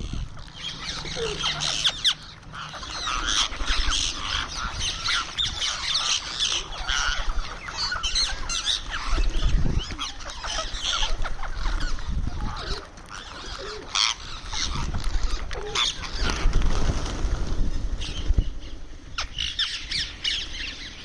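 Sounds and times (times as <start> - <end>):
parakeet squawks and chirps: 0.1 - 15.0.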